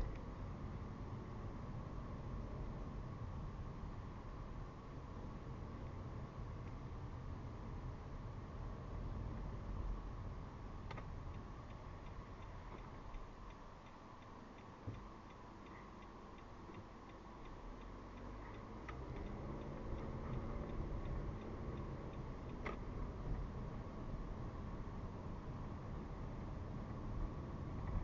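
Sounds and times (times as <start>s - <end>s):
engine and road rumble: 0.0s - 28.0s
turn signal clicking: 10.8s - 23.5s.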